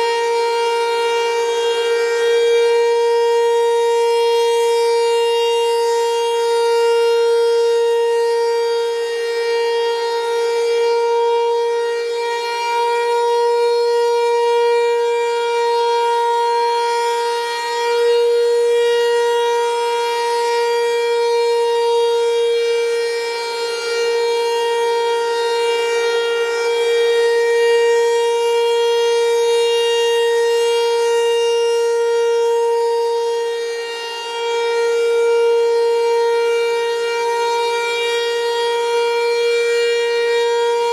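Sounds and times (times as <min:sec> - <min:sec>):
outdoor warning siren steady tone: 0:00.0 - 0:40.9.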